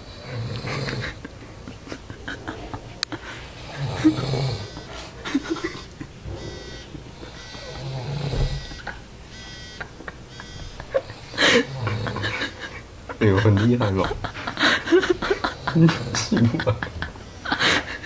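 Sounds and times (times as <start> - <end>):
person snoring: 0.2 - 1.2, 3.6 - 4.8, 11.2 - 12.5.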